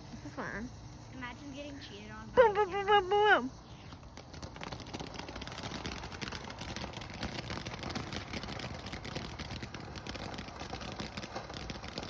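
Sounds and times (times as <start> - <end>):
firework crackling: 0.0 - 12.0.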